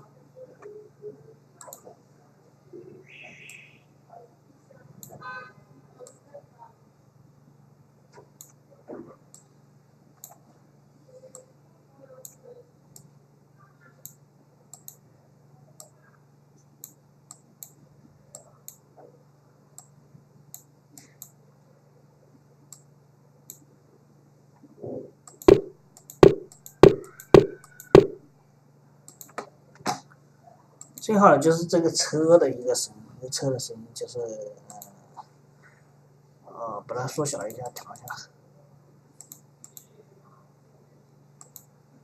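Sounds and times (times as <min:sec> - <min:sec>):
computer mouse clicking: 0:01.6 - 0:01.9, 0:08.2 - 0:08.6, 0:10.2 - 0:10.4, 0:14.0 - 0:15.0, 0:15.8 - 0:16.0, 0:16.8 - 0:18.8, 0:25.3 - 0:28.2, 0:29.1 - 0:29.4, 0:37.4 - 0:38.2, 0:39.2 - 0:39.9, 0:41.4 - 0:41.7
low hum: 0:24.8 - 0:28.4
loud knocks: 0:25.5 - 0:28.2.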